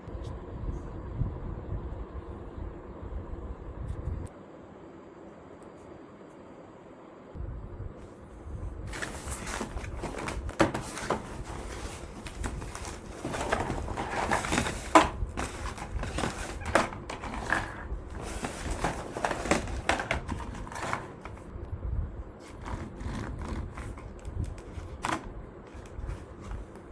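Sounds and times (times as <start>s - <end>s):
low steady hum: 0.0s - 26.9s
crunching and scraping clicks: 8.9s - 21.5s, 22.4s - 26.9s.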